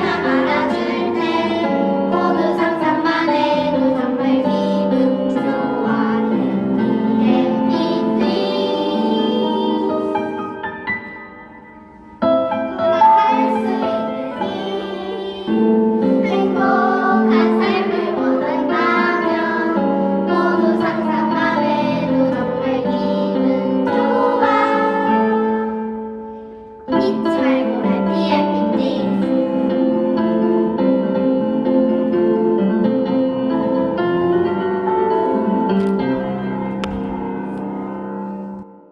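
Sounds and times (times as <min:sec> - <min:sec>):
children singing: 0:00.0 - 0:10.4, 0:12.7 - 0:26.0, 0:26.9 - 0:30.2
instrumental accompaniment: 0:00.0 - 0:38.9.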